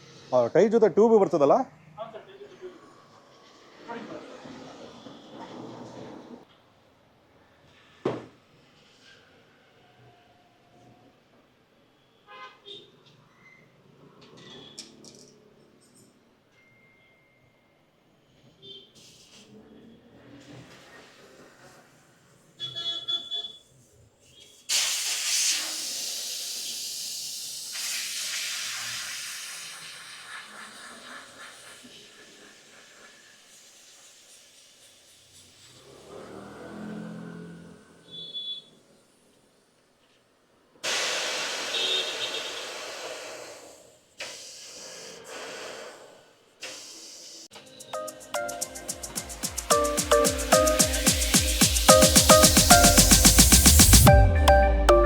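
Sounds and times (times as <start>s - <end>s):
compressed air hissing: 24.7s - 35.8s, 40.8s - 49.8s
short pitched tone: 49.7s - 55.0s.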